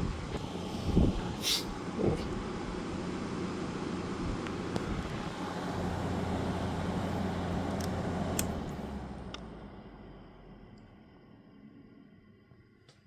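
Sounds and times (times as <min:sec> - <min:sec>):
air conditioner fan whoosh: 0:00.0 - 0:10.3.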